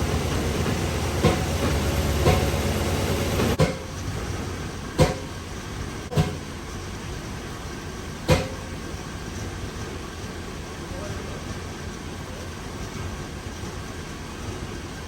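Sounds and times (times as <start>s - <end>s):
sharp engine knocks: 0.0s - 3.8s
engine low rumble: 0.0s - 4.9s.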